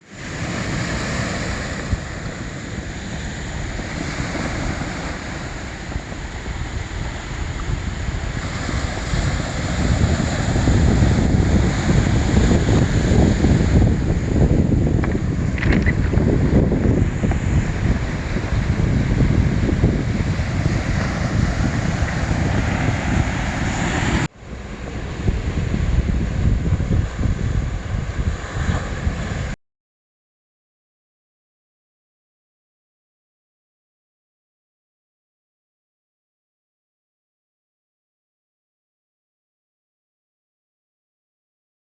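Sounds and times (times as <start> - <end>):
sea surf: 0.0 - 29.6
waves washing onto pebble beach: 0.1 - 26.3
wind buffeting microphone: 0.1 - 29.6.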